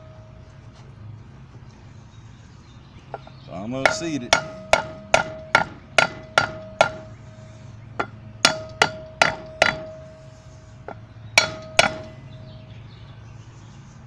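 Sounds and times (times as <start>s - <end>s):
hammer tapping wood block: 3.8s - 7.0s.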